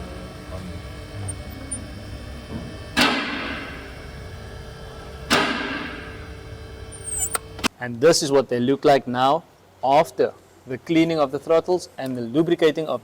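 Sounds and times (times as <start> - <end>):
steady low hum: 0.0 - 7.8
sharp ringing bangs: 5.3 - 6.2.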